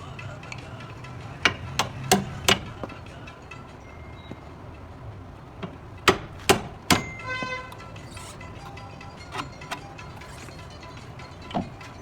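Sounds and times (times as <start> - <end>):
hammer knocks: 5.6 - 10.4.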